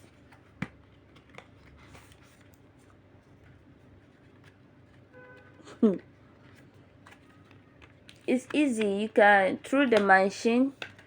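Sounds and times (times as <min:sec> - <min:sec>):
light clicks of card packaging: 0:06.2 - 0:09.1, 0:10.7 - 0:11.0.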